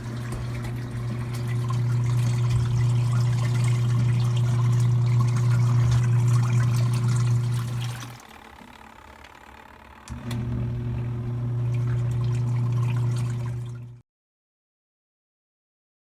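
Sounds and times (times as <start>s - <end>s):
water sloshing in tub: 0.0s - 8.7s, 10.4s - 14.0s
washing machine motor humming: 0.0s - 14.0s.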